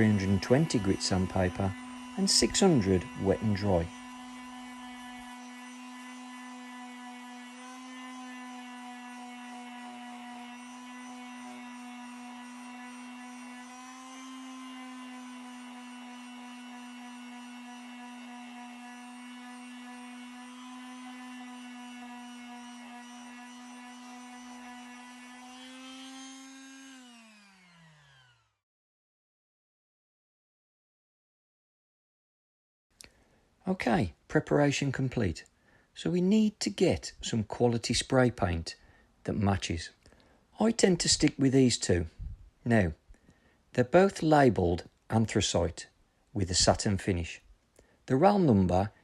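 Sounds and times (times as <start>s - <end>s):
electric orbital sander: 0.0s - 28.6s.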